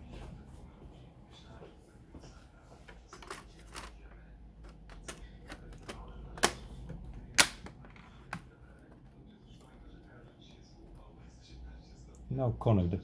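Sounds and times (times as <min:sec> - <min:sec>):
plastic case parts clicking: 0:03.2 - 0:04.0, 0:04.6 - 0:06.7, 0:07.3 - 0:08.5
plastic parts snapping: 0:03.2 - 0:04.0, 0:04.6 - 0:06.7, 0:07.3 - 0:08.5.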